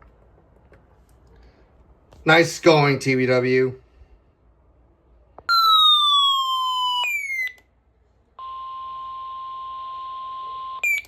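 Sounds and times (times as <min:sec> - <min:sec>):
steady warning alarm tone: 0:08.4 - 0:11.0.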